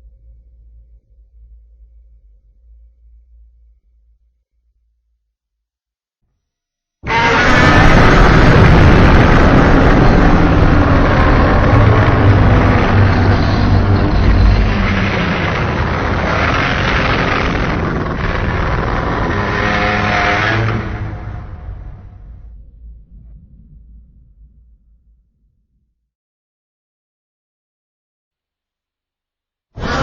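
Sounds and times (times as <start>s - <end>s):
long harsh monster roar: 7.0s - 22.2s, 29.8s - 30.0s.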